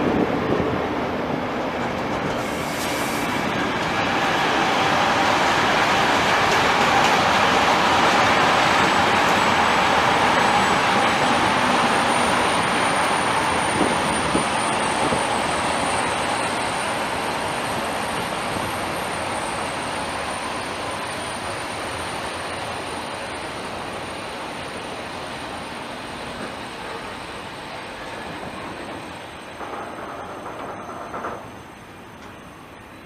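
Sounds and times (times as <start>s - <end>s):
train rolling past: 0.0s - 33.0s
train wheel clicks: 28.9s - 31.6s.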